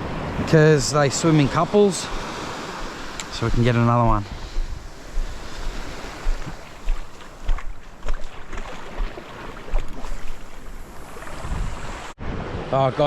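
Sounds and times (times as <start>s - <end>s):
surf washing up beach: 0.0s - 13.0s
wind gusting on microphone: 0.0s - 13.0s.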